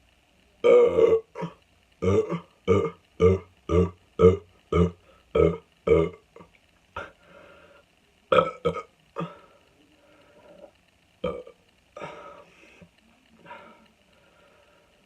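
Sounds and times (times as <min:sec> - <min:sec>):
person burping: 0:00.6 - 0:06.4, 0:08.3 - 0:09.5, 0:11.2 - 0:12.4.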